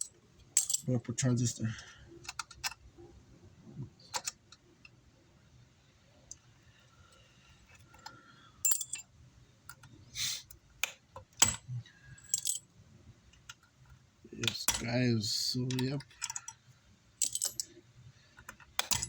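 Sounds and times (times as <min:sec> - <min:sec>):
small metal tools clinking: 0:00.0 - 0:00.9, 0:08.6 - 0:09.1, 0:11.4 - 0:12.7, 0:17.2 - 0:17.8, 0:18.8 - 0:19.0.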